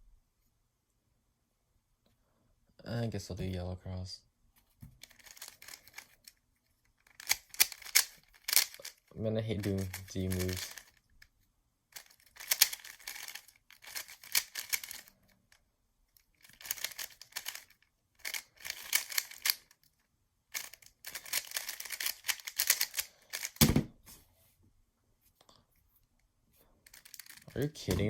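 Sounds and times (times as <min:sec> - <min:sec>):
puzzle cube clicking as turned: 0:05.0 - 0:11.3, 0:12.0 - 0:15.2, 0:16.2 - 0:19.9, 0:20.5 - 0:23.7, 0:26.9 - 0:27.5.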